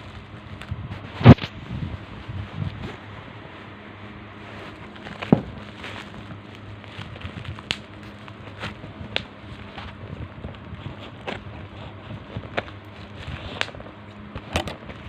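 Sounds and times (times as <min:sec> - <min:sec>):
packaging crinkling: 0:00.0 - 0:15.0
steady low hum: 0:00.0 - 0:15.0.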